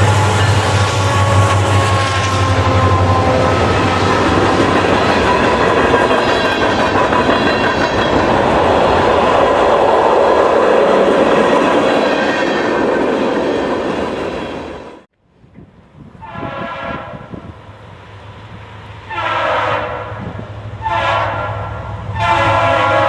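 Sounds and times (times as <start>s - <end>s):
locomotive air horn chord: 0.0s - 4.4s, 16.2s - 17.5s, 19.1s - 23.0s
train wheels rumbling on rail: 0.0s - 23.0s.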